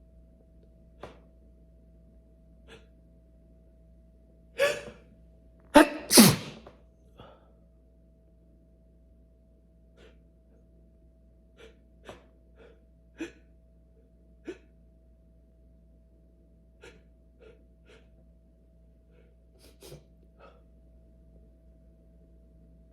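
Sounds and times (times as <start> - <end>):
person gasping and sneezing: 2.7 - 2.9, 4.6 - 5.0, 5.8 - 7.3, 11.6 - 13.4, 14.4 - 14.7, 16.8 - 18.1, 19.1 - 20.6.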